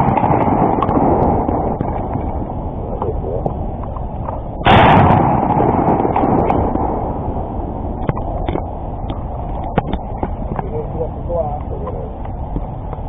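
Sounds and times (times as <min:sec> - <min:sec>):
shotgun blast: 0:00.0 - 0:02.2, 0:04.6 - 0:07.3
steady background noise: 0:00.0 - 0:13.0.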